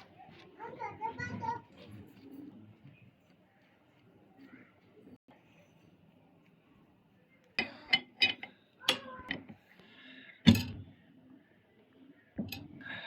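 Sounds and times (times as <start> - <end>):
metal tools clinking on workbench: 7.6 - 9.5.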